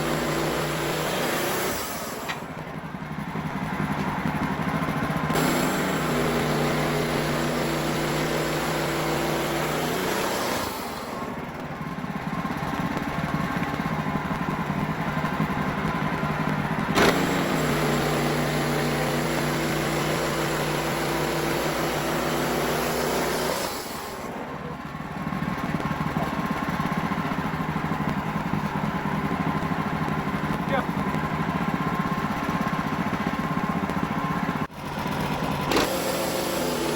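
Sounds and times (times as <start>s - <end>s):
band blade cutting log: 0.0s - 2.5s, 5.3s - 11.4s, 16.9s - 24.4s, 35.6s - 36.9s
steady engine note: 0.0s - 36.9s.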